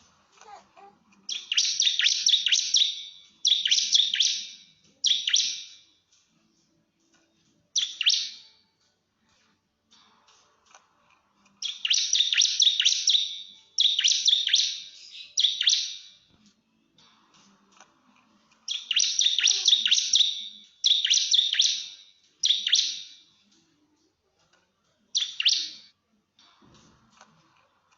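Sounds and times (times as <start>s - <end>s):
bird singing rapid sharp notes: 1.3s - 5.9s, 7.8s - 8.6s, 11.6s - 16.2s, 18.7s - 23.3s, 25.1s - 25.9s.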